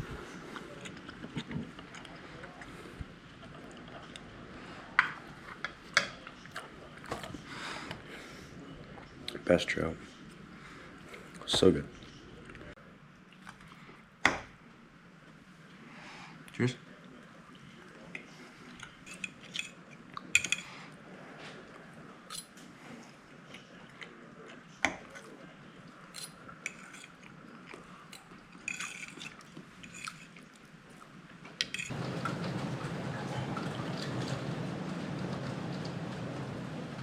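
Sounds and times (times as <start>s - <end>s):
steady rushing noise: 31.9s - 37.0s.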